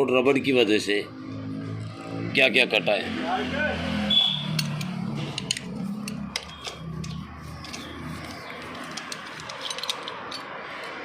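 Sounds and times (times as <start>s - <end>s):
small metal parts clicking: 4.4s - 11.0s.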